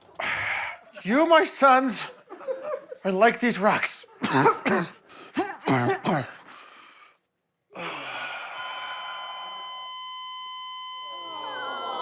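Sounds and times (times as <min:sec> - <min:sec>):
man breathing strained: 0:06.2 - 0:07.2, 0:07.8 - 0:09.7
heart monitor flatline beep: 0:08.4 - 0:12.0.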